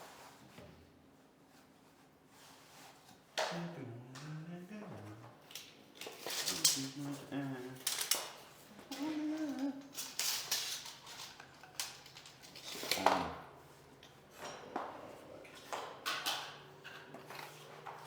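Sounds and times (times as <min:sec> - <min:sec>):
person humming: 0:03.4 - 0:05.4, 0:06.5 - 0:10.1.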